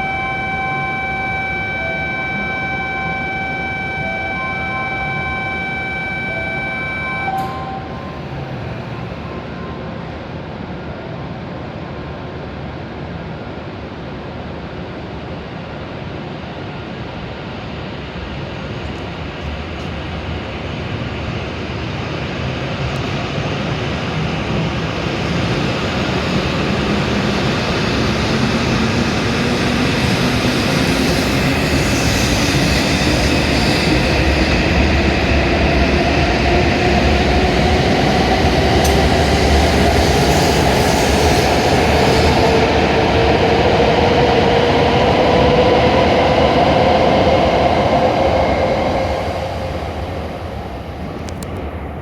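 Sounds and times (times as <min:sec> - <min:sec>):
train motor whine: 0:00.0 - 0:09.7, 0:22.9 - 0:51.8
train running noise: 0:00.0 - 0:52.0.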